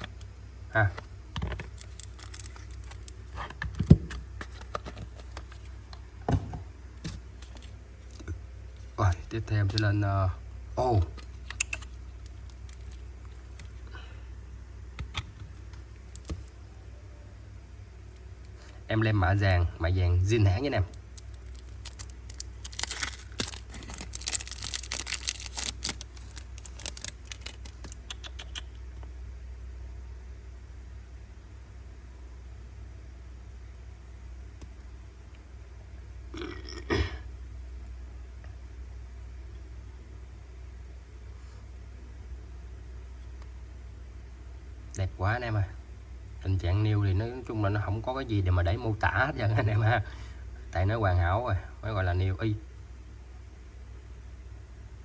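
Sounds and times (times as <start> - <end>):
steady low hum: 0.0 - 55.0
clicks and crinkling rustle: 1.3 - 5.8, 11.2 - 13.8, 15.1 - 16.6, 20.8 - 28.1.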